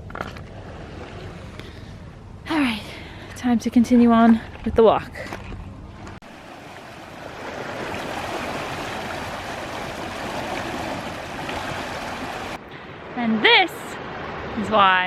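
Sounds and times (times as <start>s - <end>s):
running water: 6.2s - 12.6s.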